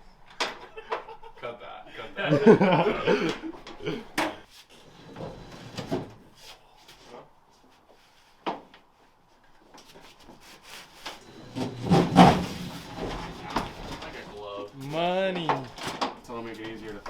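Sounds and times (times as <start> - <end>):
hard objects knocking and scraping: 11.0 - 14.4.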